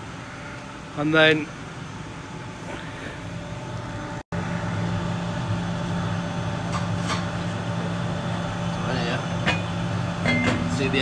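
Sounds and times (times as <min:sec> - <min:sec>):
machinery humming: 0:00.0 - 0:11.0.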